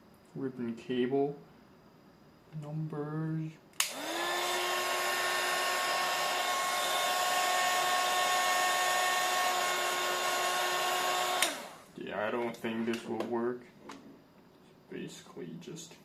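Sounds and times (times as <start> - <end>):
hot-air blower switch click: 3.8 - 4.6, 11.3 - 11.7
hot-air blower motor whine: 3.8 - 12.0.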